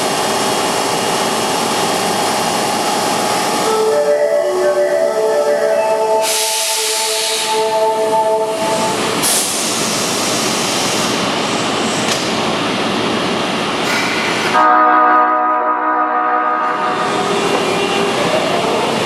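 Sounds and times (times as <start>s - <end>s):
train running noise: 0.0s - 19.0s
electric train horn chord: 14.5s - 18.2s.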